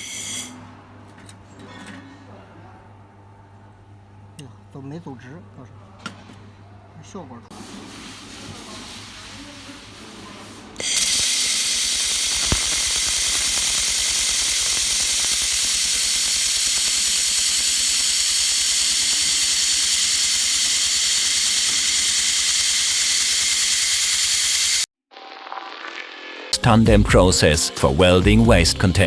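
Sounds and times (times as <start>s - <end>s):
welding arc hissing and crackling: 10.8s - 24.9s.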